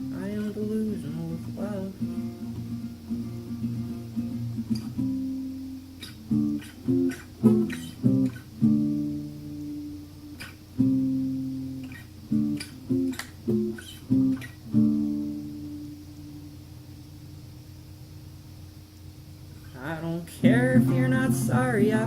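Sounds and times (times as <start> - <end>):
acoustic guitar strumming: 0.0 - 16.7, 19.6 - 22.0.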